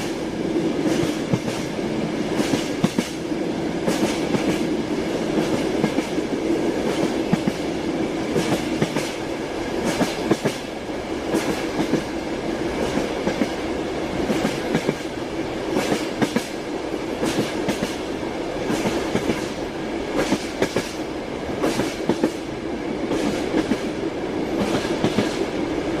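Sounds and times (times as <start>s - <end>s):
train rumble and hum: 0.0s - 26.0s
train wheels clattering over rail joints: 2.3s - 3.2s, 8.3s - 9.2s, 9.8s - 10.7s, 14.2s - 15.1s, 15.7s - 16.6s, 17.2s - 21.0s, 21.6s - 22.5s, 24.5s - 25.5s.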